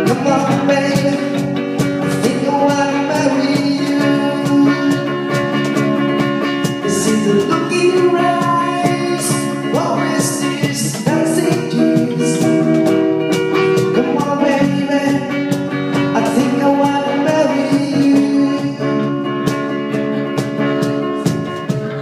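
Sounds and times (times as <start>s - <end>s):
person singing: 0.0s - 5.5s, 6.7s - 12.9s, 13.8s - 22.0s
guitar: 0.0s - 22.0s
drum hits: 3.5s - 9.9s.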